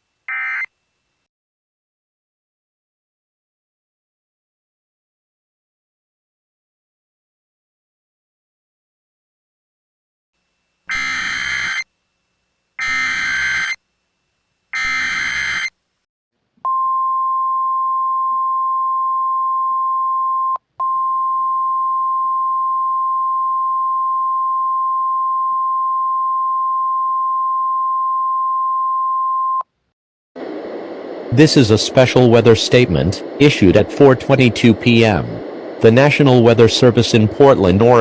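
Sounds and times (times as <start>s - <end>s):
steady warning alarm tone: 0.3s - 0.7s, 10.8s - 11.9s, 12.8s - 13.8s, 14.7s - 15.8s
data bursts: 10.9s - 11.9s, 12.8s - 13.8s, 14.7s - 15.7s.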